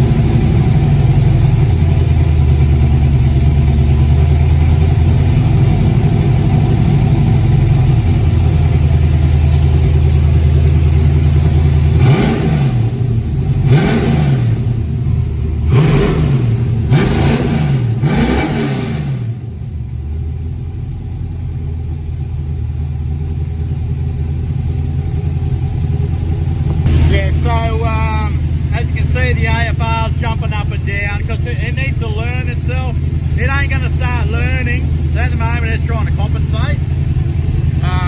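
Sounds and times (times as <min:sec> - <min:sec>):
car engine idling and revving: 0:00.0 - 0:38.0.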